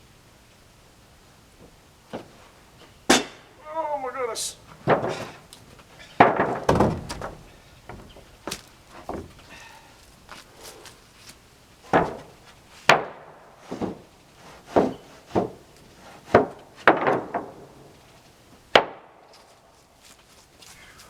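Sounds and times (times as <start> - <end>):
wooden boards knocking: 3.1 - 4.1, 4.7 - 9.6, 11.8 - 17.8.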